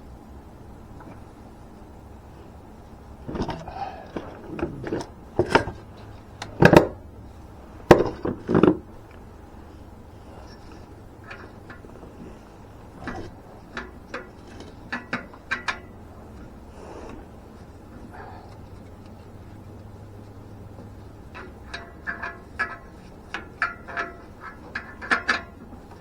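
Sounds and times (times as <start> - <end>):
hand tools knocking and scraping: 3.2 - 7.0, 7.8 - 9.0, 10.4 - 26.0.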